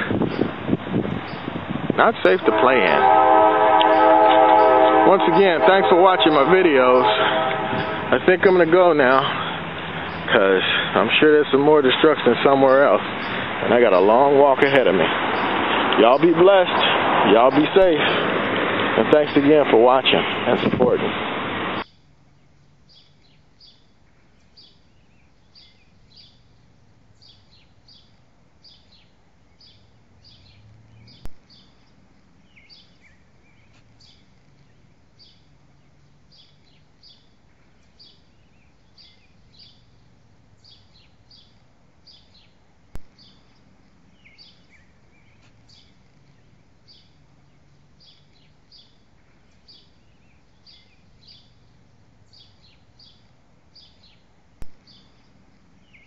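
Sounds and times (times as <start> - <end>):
small bird chirping: 21.8 - 56.0.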